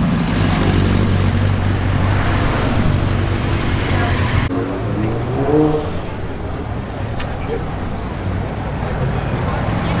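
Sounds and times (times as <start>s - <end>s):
loud outdoor noise: 0.0s - 10.0s
car engine idling: 1.2s - 4.5s.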